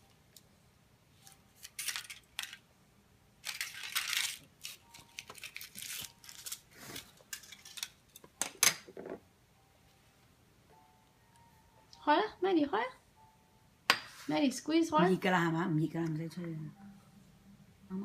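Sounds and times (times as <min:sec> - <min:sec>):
wrapper crinkling: 0:01.5 - 0:02.6, 0:03.4 - 0:08.0.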